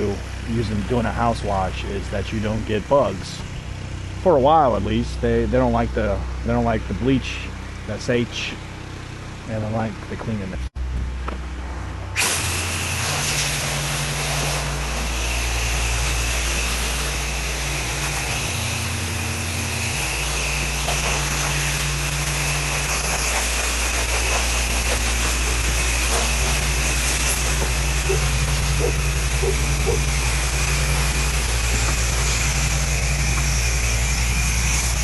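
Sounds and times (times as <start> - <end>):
pressure washer engine hum: 0.0 - 35.0
water spray hissing: 12.2 - 35.0.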